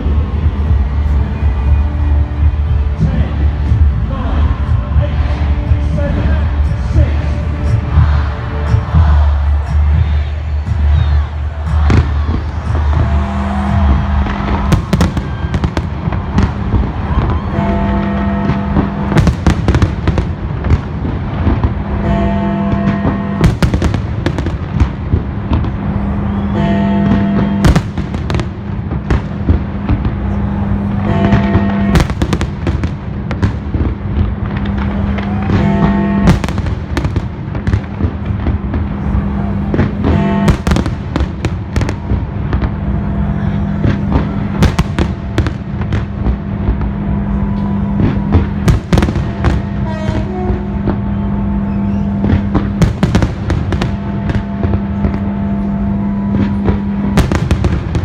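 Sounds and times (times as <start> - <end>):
fireworks bursting: 4.6 - 58.0
music on a low held note: 38.0 - 58.0.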